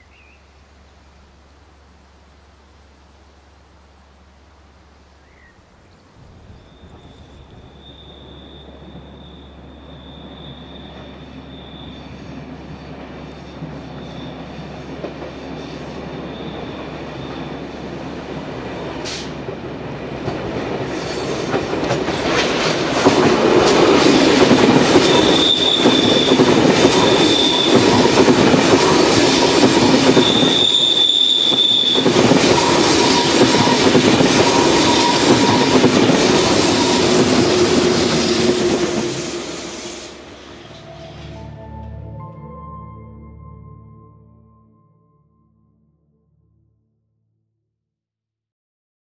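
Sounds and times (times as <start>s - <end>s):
train rolling rumble: 5.7s - 42.2s
train wheels squealing: 6.4s - 18.0s, 20.8s - 22.5s, 23.8s - 41.4s.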